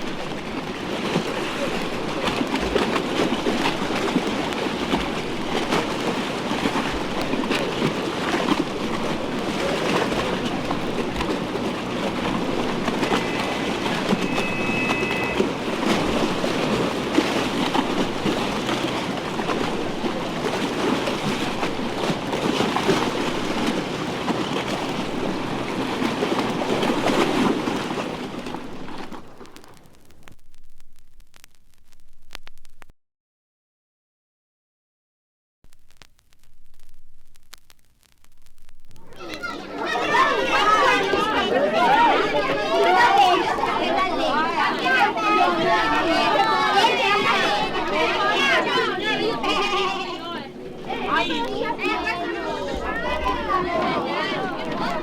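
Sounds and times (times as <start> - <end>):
faint two-note whistle: 13.1 - 15.5.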